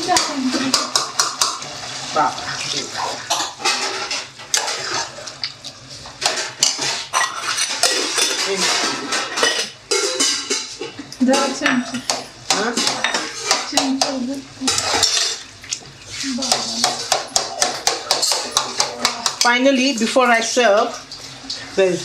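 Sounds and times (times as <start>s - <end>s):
dishes and cutlery clattering: 0.0s - 1.7s, 3.0s - 5.4s, 6.1s - 15.8s, 16.4s - 20.2s.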